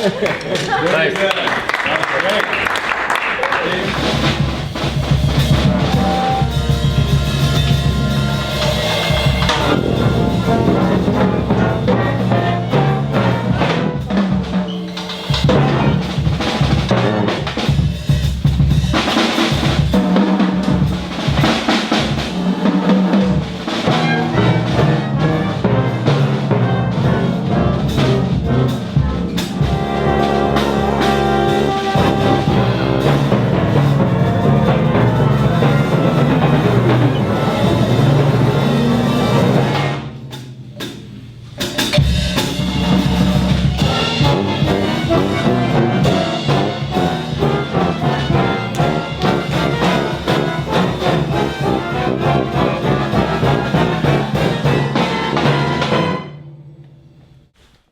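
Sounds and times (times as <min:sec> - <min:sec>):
drum kit beat: 0:00.0 - 0:56.5
brass instruments playing: 0:03.4 - 0:57.2
low bass line: 0:04.0 - 0:14.6, 0:23.2 - 0:56.0.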